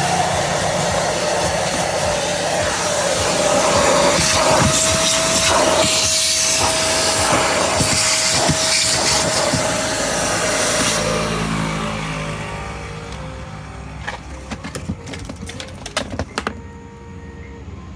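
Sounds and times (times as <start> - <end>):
vacuum motor winding down: 0.0 - 14.0
vacuum cleaner running: 0.0 - 15.4.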